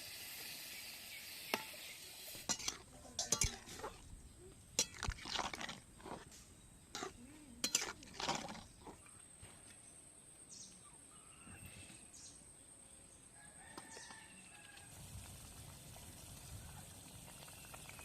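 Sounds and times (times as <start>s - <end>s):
rooster crowing faintly: 13.4s - 15.0s.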